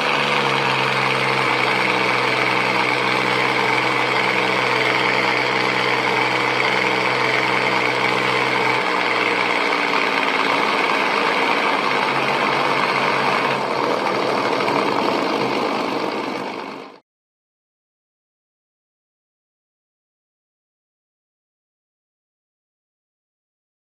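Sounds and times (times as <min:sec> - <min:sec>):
light aircraft engine: 0:00.0 - 0:17.0.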